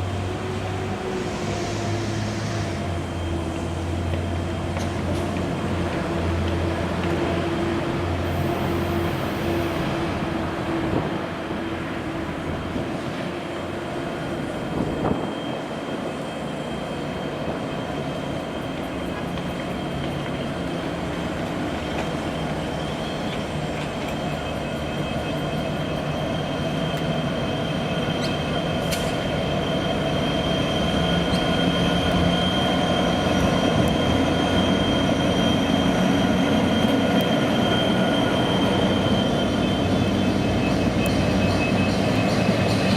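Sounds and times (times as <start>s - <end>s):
train wagons rolling on rails: 0.0s - 42.9s
high-pitched wheel squeal: 14.9s - 42.9s.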